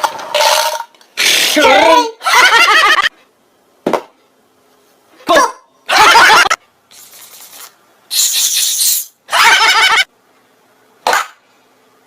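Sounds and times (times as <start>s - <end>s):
faint mouth hiss: 6.9s - 9.2s.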